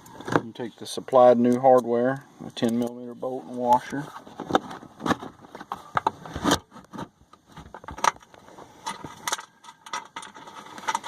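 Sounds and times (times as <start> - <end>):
metal bolt clicking and scraping: 7.6 - 11.0.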